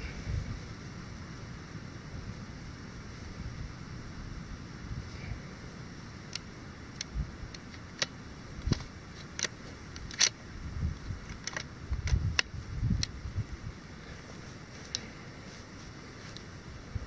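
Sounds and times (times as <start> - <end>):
wind rumble on microphone: 0.0 - 6.0, 6.9 - 7.7, 8.4 - 17.0
light clicks and ticks: 6.3 - 13.2, 14.8 - 15.1.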